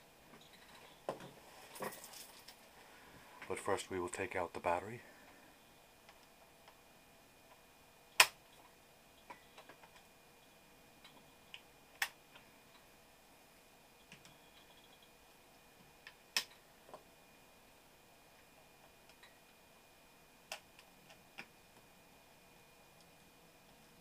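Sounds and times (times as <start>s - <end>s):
sharp plastic clicks: 8.2s - 8.4s.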